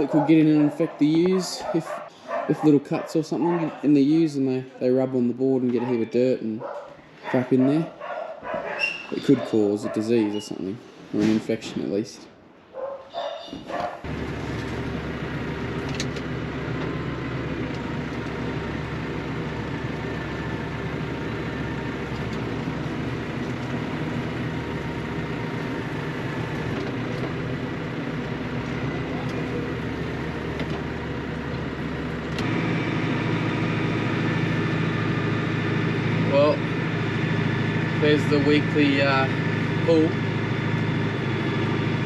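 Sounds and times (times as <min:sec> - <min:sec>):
vehicle engine running: 0:13.8 - 0:42.0.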